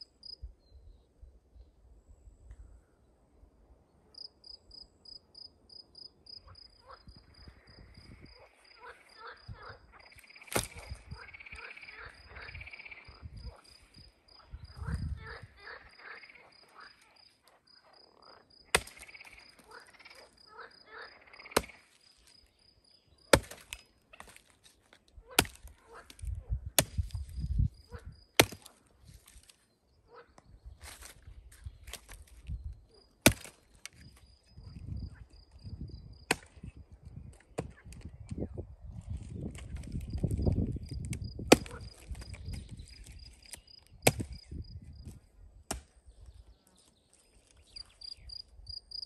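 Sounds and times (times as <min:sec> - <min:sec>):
frogs croaking: 0:04.1 - 0:24.4, 0:25.1 - 0:31.1, 0:32.4 - 0:36.6, 0:40.1 - 0:45.3, 0:47.5 - 0:49.0.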